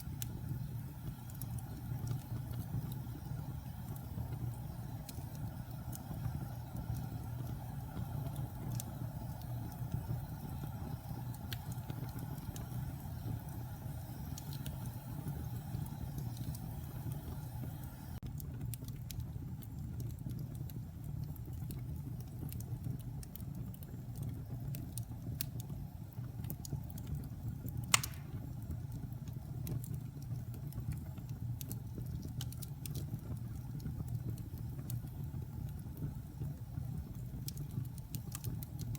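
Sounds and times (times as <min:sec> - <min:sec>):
fire crackling and popping: 0:00.0 - 0:38.9
wood fire rumbling: 0:00.0 - 0:38.9.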